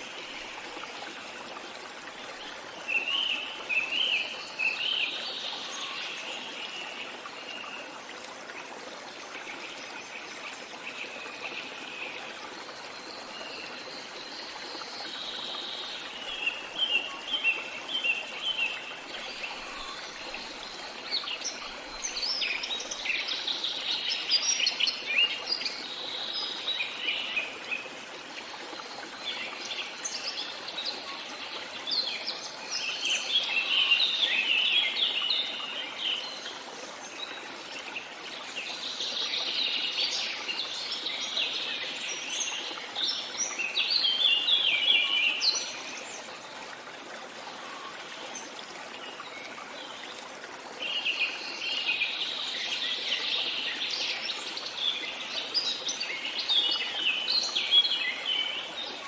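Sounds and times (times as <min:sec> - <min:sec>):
running water: 0:00.0 - 0:59.0.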